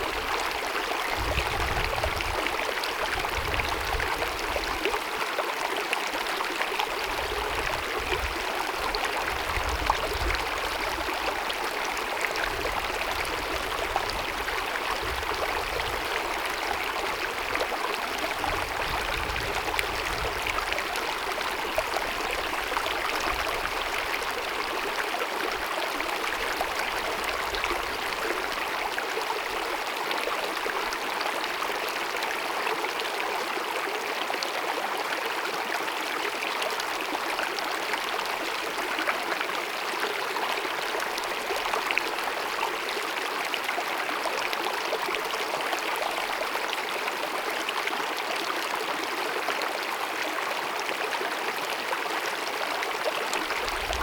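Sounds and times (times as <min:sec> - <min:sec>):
stream babbling over rocks: 0:00.0 - 0:54.0.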